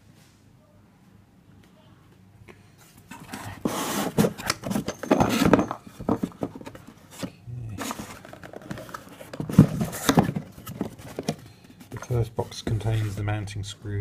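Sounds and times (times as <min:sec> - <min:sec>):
cardboard and plastic rustling: 0:02.9 - 0:13.4.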